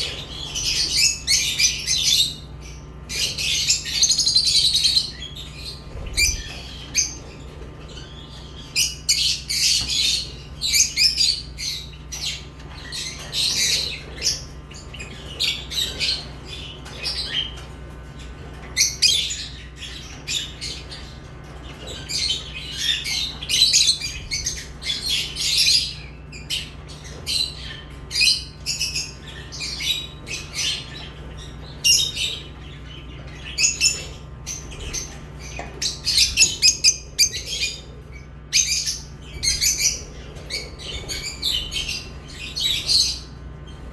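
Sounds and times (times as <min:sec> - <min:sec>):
lovebirds chirping: 0:00.0 - 0:43.9
steady low hum: 0:00.0 - 0:43.9.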